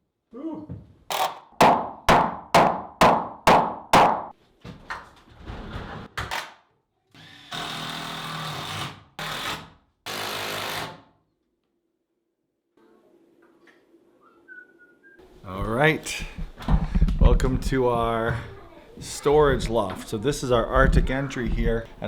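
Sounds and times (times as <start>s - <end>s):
power drill running: 7.2s - 9.5s.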